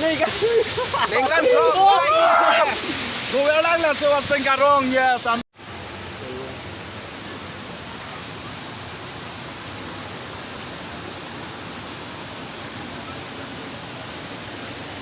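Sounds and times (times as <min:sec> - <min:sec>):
waterfall roaring: 0:00.0 - 0:15.0.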